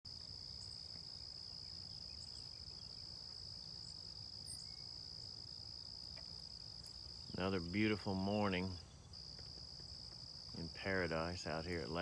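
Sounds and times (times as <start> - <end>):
insects trilling: 0.1 - 12.0
faint bird chirps: 0.4 - 5.4.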